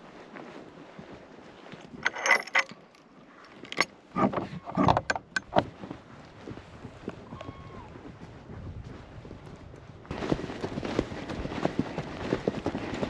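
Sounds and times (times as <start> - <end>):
metal horse tack clinking: 1.8 - 5.7.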